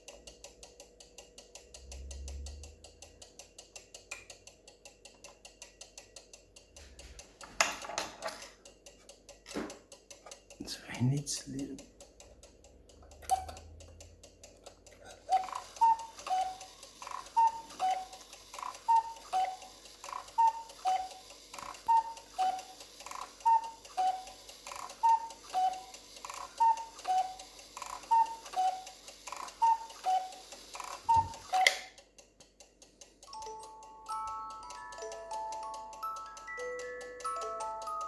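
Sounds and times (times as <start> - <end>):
clock mechanism click: 0.0 - 38.0
cuckoo clock calling: 11.3 - 13.8, 14.5 - 32.0, 33.2 - 38.0.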